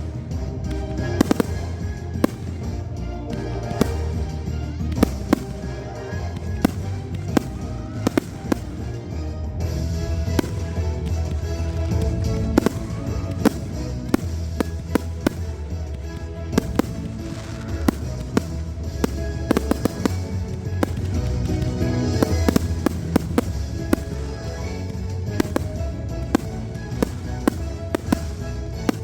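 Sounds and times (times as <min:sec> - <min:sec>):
fireworks bangs and crackles: 0:00.0 - 0:29.0
music playing: 0:00.0 - 0:29.0.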